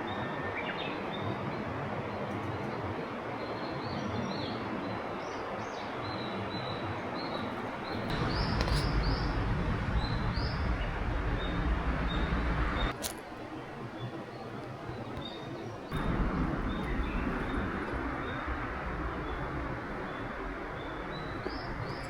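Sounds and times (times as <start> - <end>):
small birds chirping: 7.3 - 13.0, 14.0 - 22.0
outdoor hiss: 7.4 - 13.8, 15.8 - 22.0
low rumble: 8.0 - 13.0, 15.9 - 22.0.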